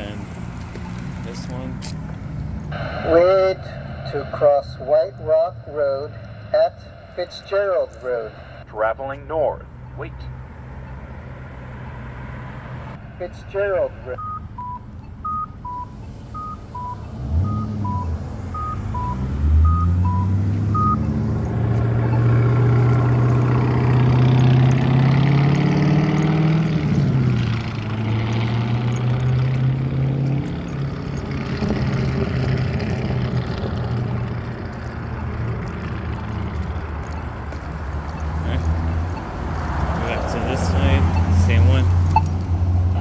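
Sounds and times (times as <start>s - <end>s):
pedestrian signal beeps: 14.0s - 29.4s, 34.8s - 43.0s
vehicle engine accelerating past: 16.1s - 43.0s.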